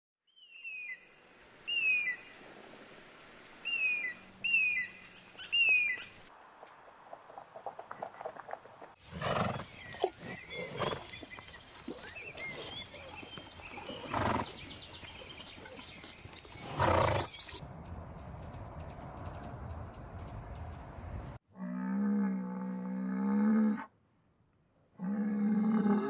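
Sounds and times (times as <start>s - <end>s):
small birds chirping: 9.4s - 21.4s.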